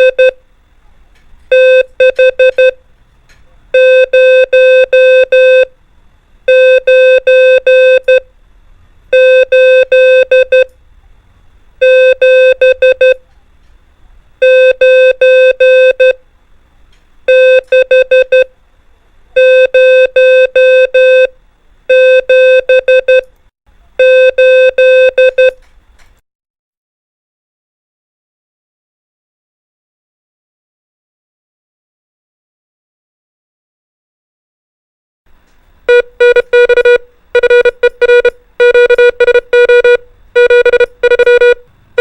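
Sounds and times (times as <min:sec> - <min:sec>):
morse code beeps: 0:00.0 - 0:00.4, 0:01.5 - 0:02.8, 0:03.8 - 0:05.7, 0:06.5 - 0:08.3, 0:09.1 - 0:10.7, 0:11.8 - 0:13.2, 0:14.4 - 0:16.2, 0:17.3 - 0:18.5, 0:19.4 - 0:21.3, 0:21.9 - 0:23.3, 0:24.0 - 0:25.6, 0:35.9 - 0:42.0.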